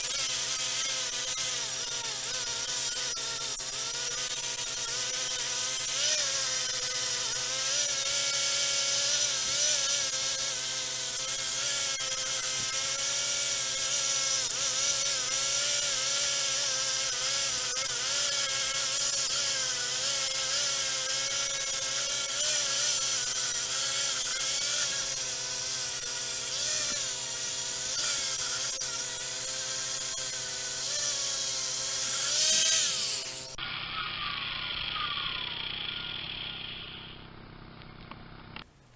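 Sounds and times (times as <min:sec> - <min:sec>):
power tool whining and scraping: 0:00.0 - 0:33.6.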